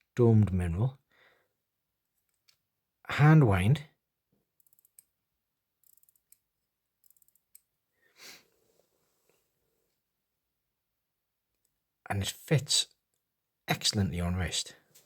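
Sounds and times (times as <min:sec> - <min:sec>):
person breathing: 0:01.1 - 0:01.6, 0:07.9 - 0:08.9
watch winding ratchet clicks: 0:04.6 - 0:05.1, 0:05.8 - 0:06.4, 0:07.0 - 0:07.6.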